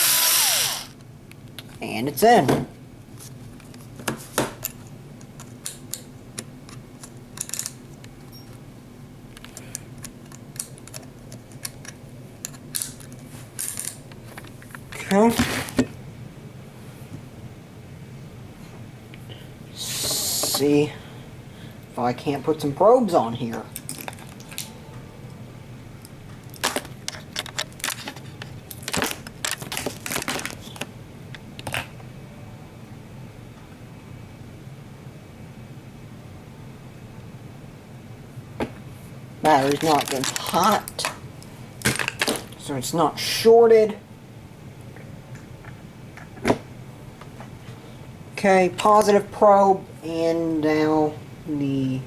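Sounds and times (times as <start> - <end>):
test probes clicking and clattering: 9.3 - 15.2, 26.5 - 31.9.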